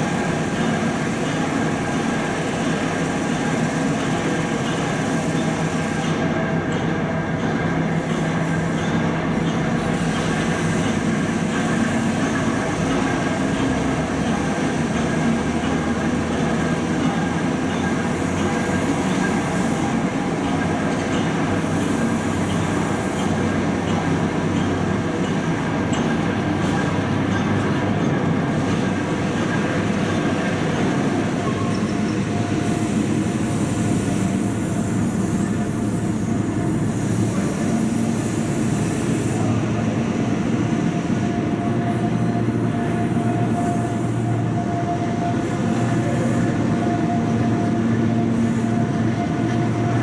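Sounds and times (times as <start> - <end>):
diesel train engine hum: 0.0 - 50.0
train wheels on rails: 0.0 - 50.0.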